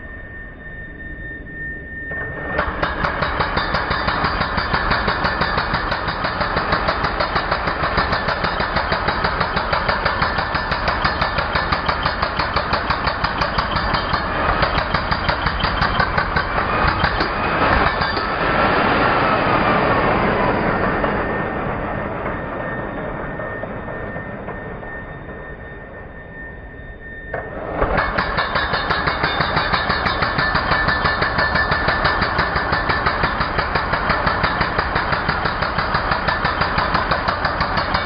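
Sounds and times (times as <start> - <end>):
electric concrete breaker hammering: 2.3 - 19.4, 27.4 - 38.0.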